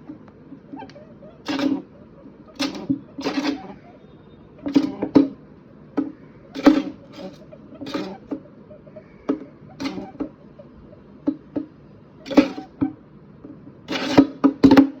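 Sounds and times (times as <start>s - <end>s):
rabbit grunting: 0.7s - 5.2s, 6.2s - 11.1s, 12.2s - 12.8s.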